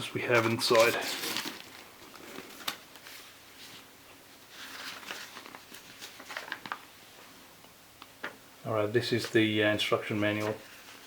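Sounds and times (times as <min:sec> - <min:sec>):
rustling through a tool bag: 0:00.3 - 0:03.8.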